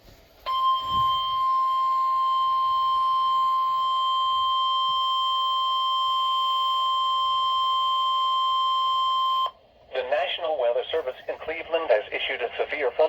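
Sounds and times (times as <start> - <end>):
high-pitched sine alert tone: 0.5 - 9.5.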